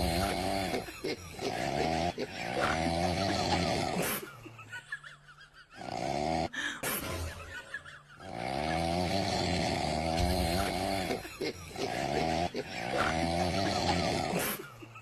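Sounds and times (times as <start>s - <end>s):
snoring: 0.0s - 4.3s, 5.8s - 6.6s, 8.2s - 14.8s.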